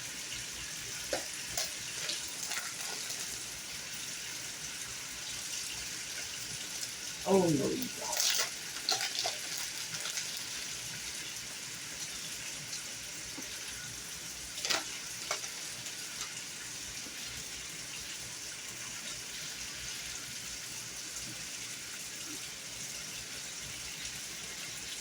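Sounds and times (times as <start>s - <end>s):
chicken sizzling in hot oil: 0.0s - 25.0s.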